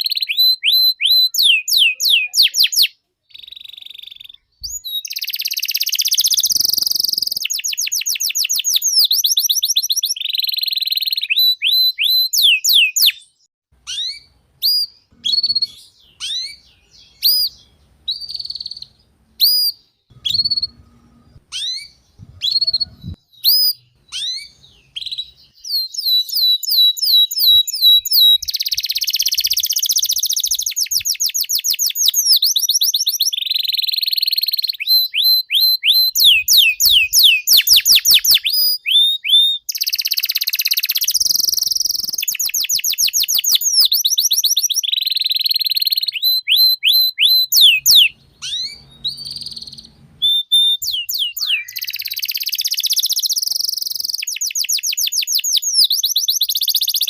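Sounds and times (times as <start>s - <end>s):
canary singing trills: 0.0s - 57.0s
short rising chirps: 18.1s - 25.2s, 47.3s - 54.2s.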